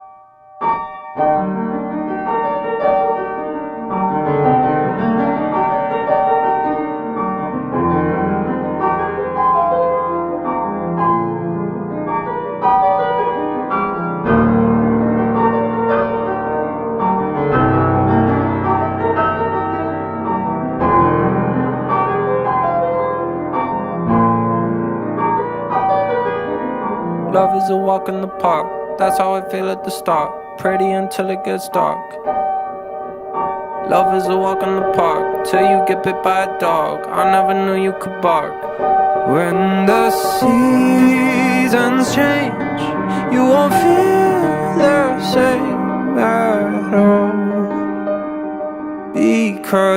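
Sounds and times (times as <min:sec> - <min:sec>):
slow piano music: 0:00.0 - 0:49.9.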